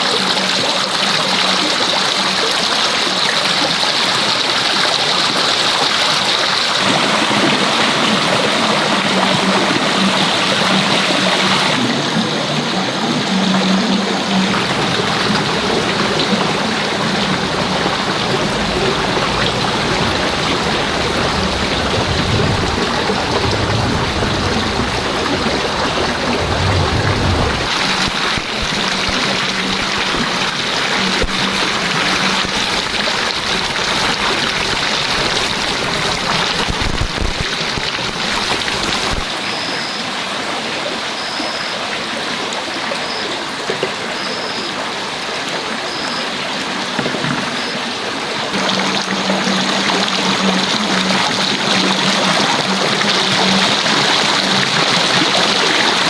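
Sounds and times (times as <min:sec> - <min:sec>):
running water rushing: 0:00.0 - 0:56.0.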